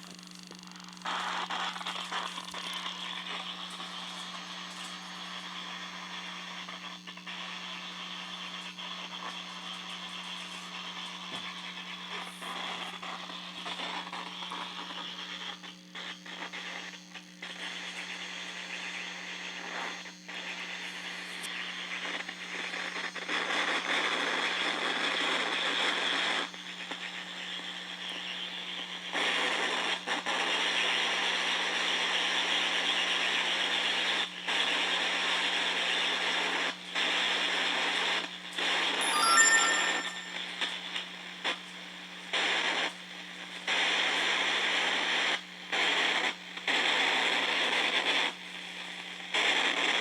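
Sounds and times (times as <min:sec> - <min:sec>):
crackly electronic static: 0:00.0 - 0:38.2.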